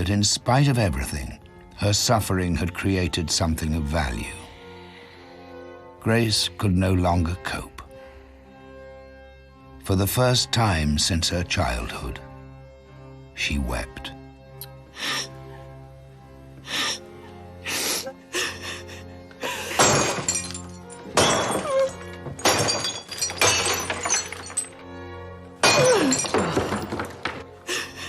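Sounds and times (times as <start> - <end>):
soft sustained music: 0.0 - 28.0
porcelain figurines smashing: 19.7 - 25.0, 25.6 - 27.6.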